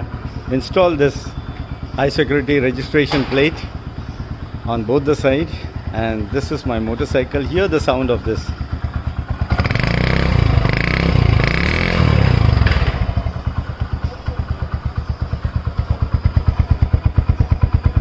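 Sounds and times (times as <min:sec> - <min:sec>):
motorcycle engine revving and idling: 0:00.0 - 0:18.0.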